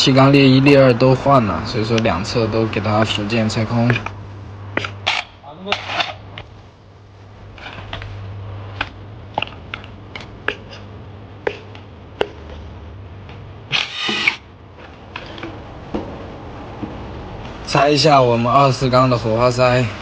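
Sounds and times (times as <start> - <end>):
steady low hum: 0.0 - 20.0
metal parts clinking: 5.0 - 6.2
rasping burst: 13.7 - 14.4.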